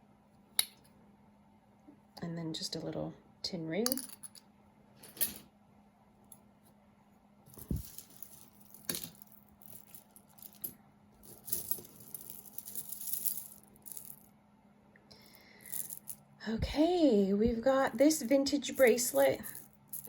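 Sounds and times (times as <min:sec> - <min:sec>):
jewelry clinking and jingling: 0:07.5 - 0:14.3, 0:15.6 - 0:16.2, 0:18.0 - 0:20.0.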